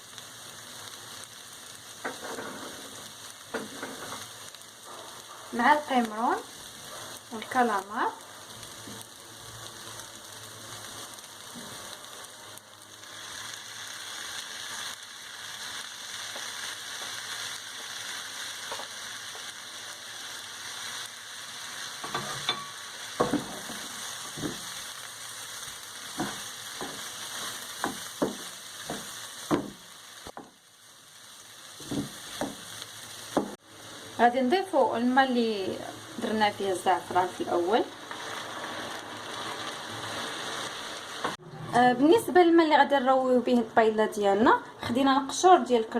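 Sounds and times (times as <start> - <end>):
food sizzling in a pan: 0.0 - 45.9
spoon scraping a pan: 2.0 - 4.3.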